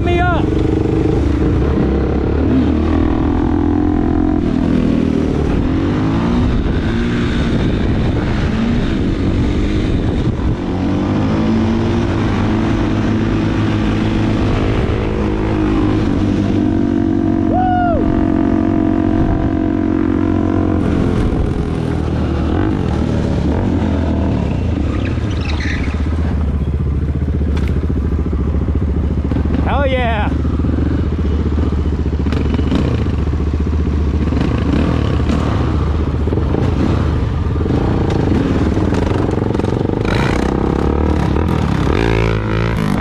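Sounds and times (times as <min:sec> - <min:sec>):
dirt bike engines revving: 0:00.0 - 0:43.0.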